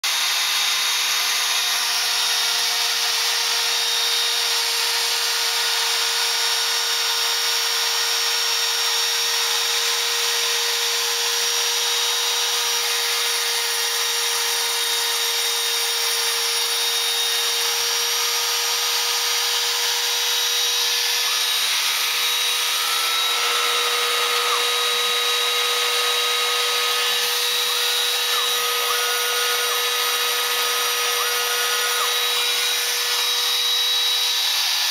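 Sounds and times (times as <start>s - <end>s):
milling machine spindle whine: 0.0s - 34.9s.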